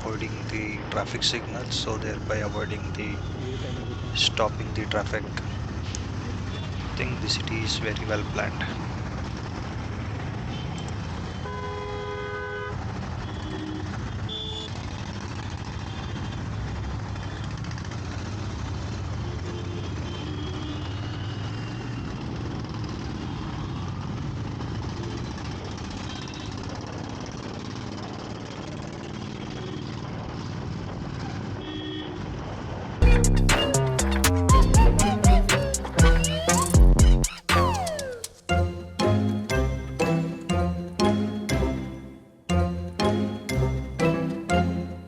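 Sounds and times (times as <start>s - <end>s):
road noise: 0.0s - 45.0s
vehicle horn honking: 11.4s - 14.7s
motorcycle engine: 12.8s - 31.3s.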